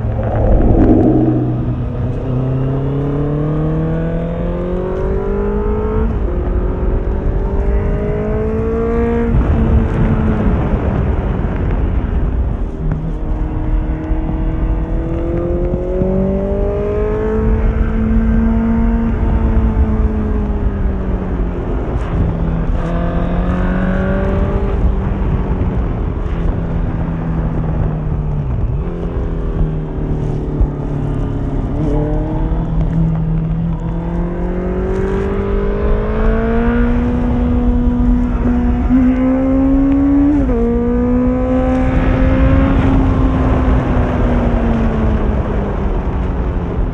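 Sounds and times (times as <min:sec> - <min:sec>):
low rushing noise: 0:00.0 - 0:03.2
motorcycle engine revving: 0:00.0 - 0:07.0, 0:29.0 - 0:45.5.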